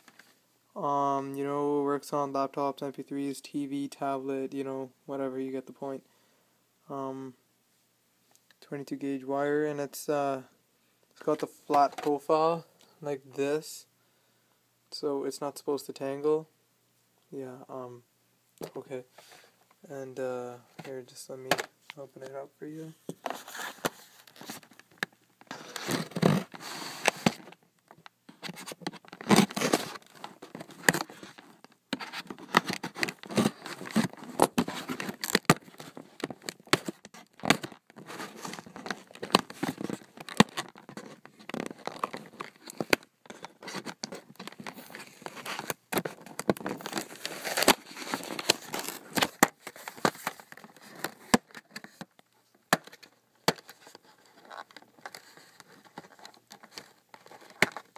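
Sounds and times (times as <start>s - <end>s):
packaging tearing and crinkling: 28.5s - 52.0s.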